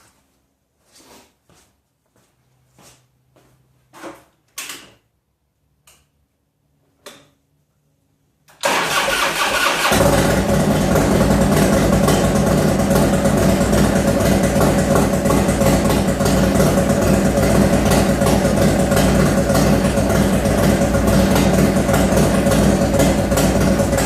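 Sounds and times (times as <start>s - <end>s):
click: 5.8s - 6.1s
motorcycle starter cranking: 8.6s - 12.2s
motorcycle engine running: 9.8s - 24.0s.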